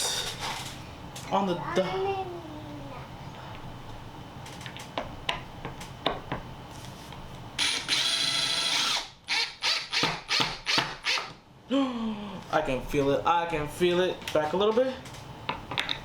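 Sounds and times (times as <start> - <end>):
power drill whining: 7.6 - 11.3.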